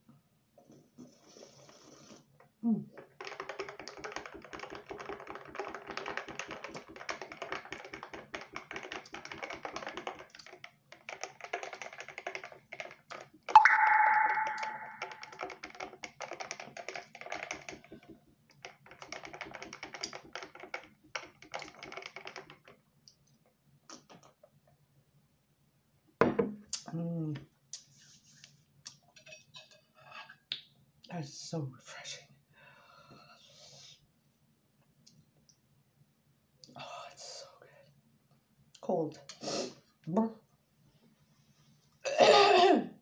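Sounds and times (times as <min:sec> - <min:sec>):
loud sudden sound: 0:13.6 - 0:15.4.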